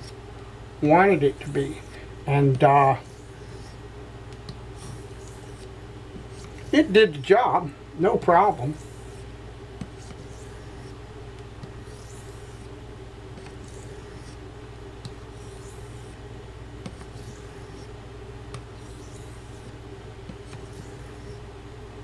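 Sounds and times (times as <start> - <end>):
steady hum: 0.0 - 22.0
knife scraping on whetstone: 2.9 - 3.8, 4.8 - 6.9, 8.7 - 11.0, 11.7 - 12.7, 13.4 - 14.4, 15.0 - 16.2, 16.8 - 17.9, 18.8 - 21.4.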